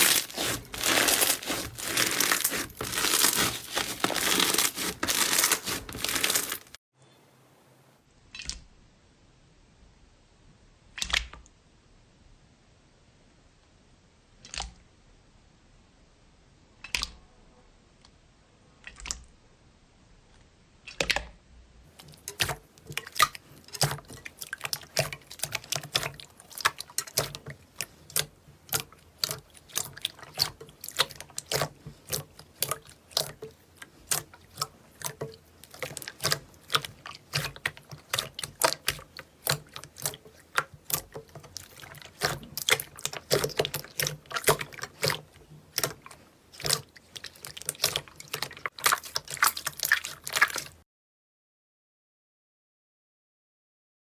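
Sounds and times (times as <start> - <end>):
slime squelching: 0.0 - 6.8, 21.9 - 50.8.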